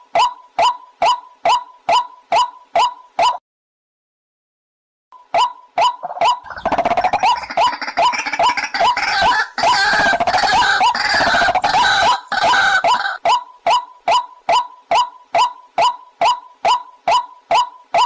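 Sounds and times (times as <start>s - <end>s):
waterhen croaking calls: 5.4s - 18.0s.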